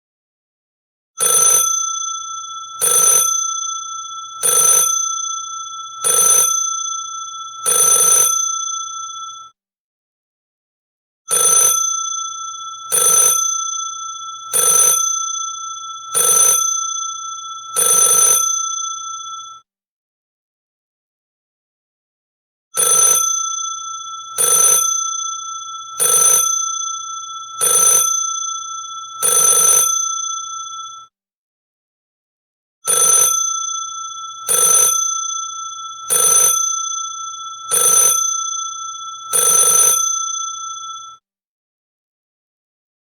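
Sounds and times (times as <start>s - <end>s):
telephone bell ringing: 1.2s - 9.6s, 11.3s - 19.7s, 22.8s - 31.2s, 32.9s - 41.3s.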